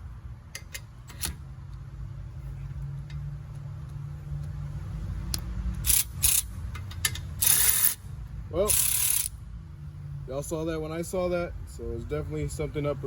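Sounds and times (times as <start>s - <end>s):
ratchet clicks and clattering: 5.8s - 8.0s, 8.6s - 9.4s
cordless ratchet motor humming: 7.4s - 8.0s, 8.7s - 9.4s.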